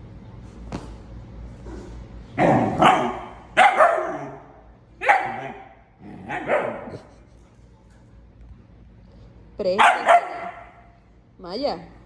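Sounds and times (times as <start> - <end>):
dog barking: 2.6 - 7.0, 9.8 - 10.9.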